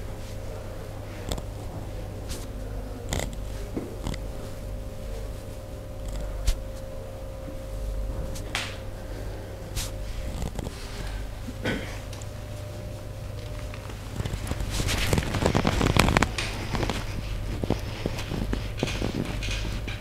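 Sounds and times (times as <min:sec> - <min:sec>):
steady low hum: 0:00.0 - 0:20.0
hands rubbing: 0:01.2 - 0:07.0, 0:09.7 - 0:11.1, 0:13.5 - 0:20.0.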